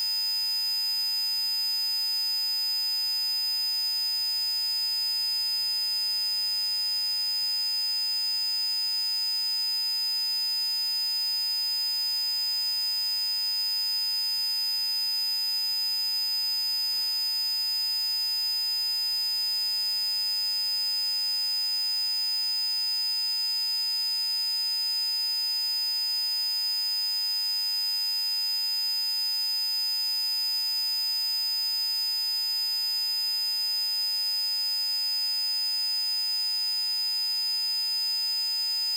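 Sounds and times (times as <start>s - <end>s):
high pure sine tone: 12.4s - 26.8s.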